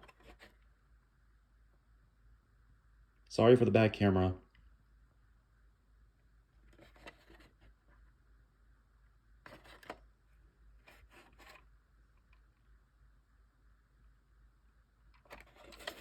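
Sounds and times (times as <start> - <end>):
quiet handling scrapes and clicks: 0.0 - 0.7, 6.6 - 8.1, 9.4 - 12.6, 15.1 - 16.0.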